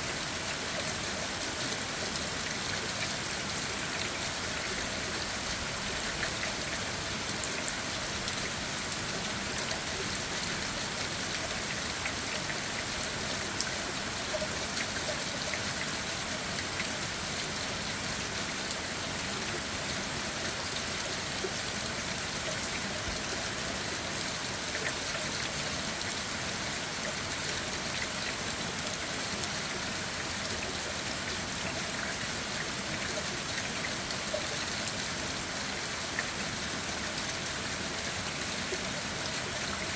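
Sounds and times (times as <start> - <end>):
rain on leaves: 0.0 - 39.9.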